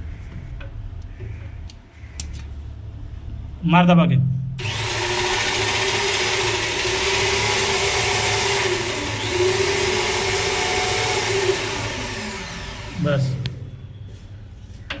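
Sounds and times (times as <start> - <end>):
electric power tool motor: 4.6 - 13.7.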